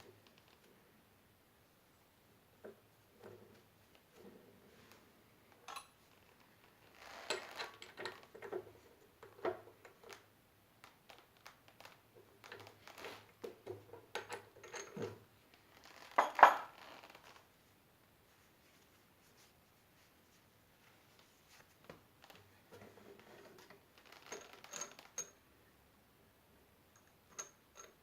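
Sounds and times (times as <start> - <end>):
metal parts clinking: 5.7 - 6.0.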